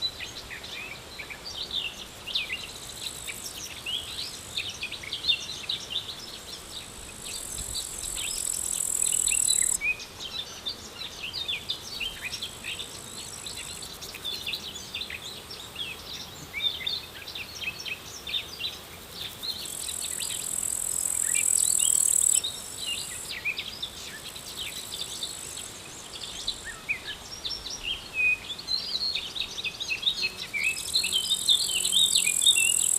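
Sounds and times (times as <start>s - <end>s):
small birds chirping: 5.4s - 32.9s
insect high-pitched trill: 6.6s - 9.8s, 19.5s - 23.4s, 30.3s - 32.9s.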